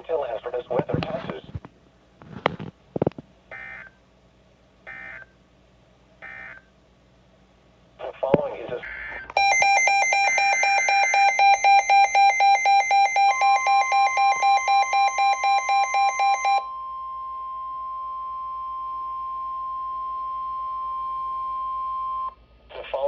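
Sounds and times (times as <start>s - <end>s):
rapid electronic alarm beeps: 8.9s - 16.6s
steady warning alarm tone: 9.4s - 16.6s.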